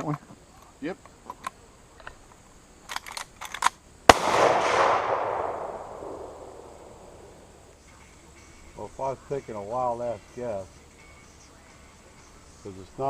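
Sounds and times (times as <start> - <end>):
rifle handling clicks: 2.9 - 3.8
rifle shot echoing: 4.1 - 7.7.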